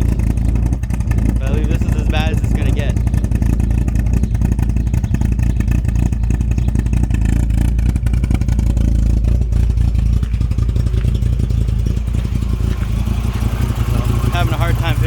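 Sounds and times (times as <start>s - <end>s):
car engine idling rough: 0.0s - 15.0s.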